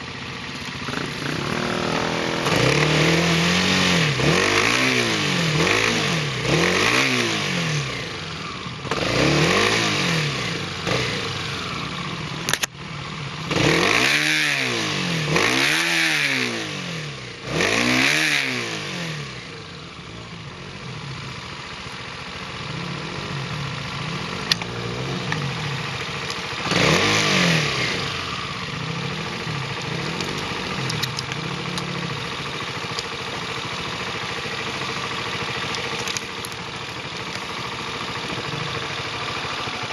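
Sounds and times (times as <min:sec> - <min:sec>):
motorcycle engine revving: 0:00.0 - 0:39.9
sharp click: 0:12.5 - 0:12.8.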